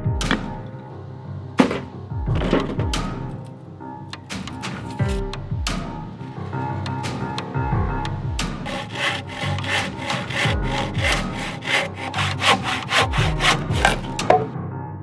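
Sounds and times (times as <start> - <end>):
background music: 0.0 - 15.0
handsaw cutting wood: 8.6 - 14.3.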